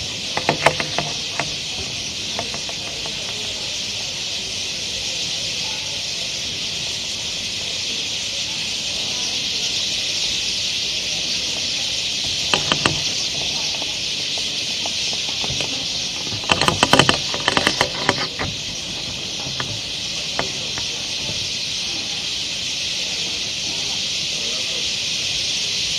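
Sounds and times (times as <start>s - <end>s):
sharp clicks or knocks: 0.0s - 3.6s, 12.1s - 21.6s
dense chorus of birds chirping: 0.0s - 25.9s.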